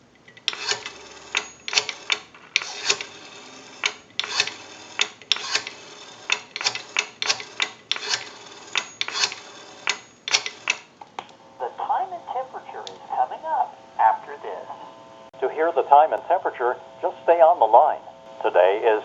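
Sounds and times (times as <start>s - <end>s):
rotary dial clicking: 0.2s - 11.4s.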